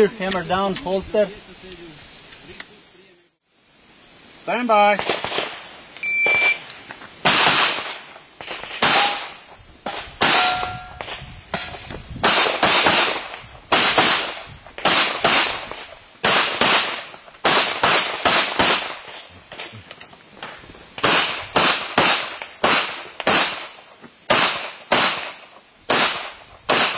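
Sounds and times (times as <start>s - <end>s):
brief ringing tone: 6.0s - 6.6s.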